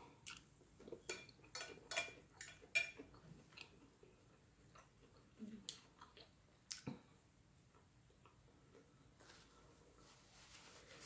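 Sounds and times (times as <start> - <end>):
eating clicks and smacks: 0.2 - 7.1.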